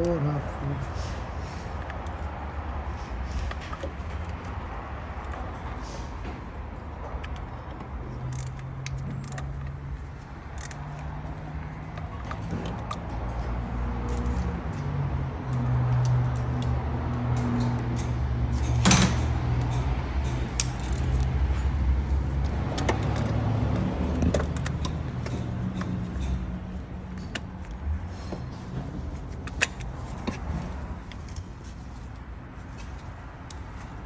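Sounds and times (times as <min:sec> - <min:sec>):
metal tools clinking on bolts: 0:08.1 - 0:14.5, 0:17.3 - 0:34.0.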